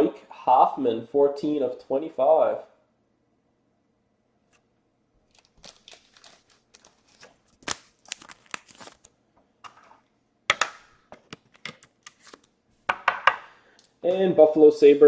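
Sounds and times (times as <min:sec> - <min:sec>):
plastic packaging crinkling: 0:05.2 - 0:09.9.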